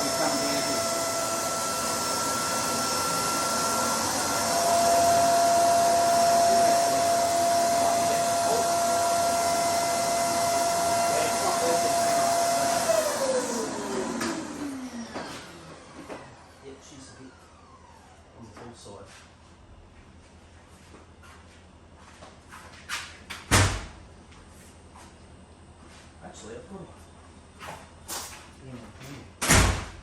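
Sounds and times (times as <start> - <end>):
electric motor whining: 0.0 - 18.1.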